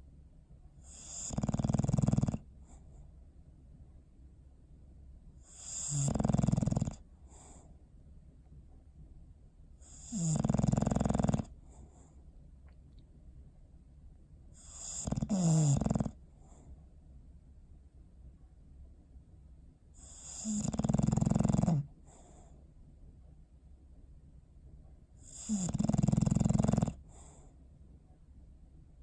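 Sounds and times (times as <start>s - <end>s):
dog snoring: 0.8s - 2.8s, 5.4s - 7.7s, 9.8s - 12.2s, 14.5s - 16.7s, 20.0s - 22.6s, 25.2s - 27.5s.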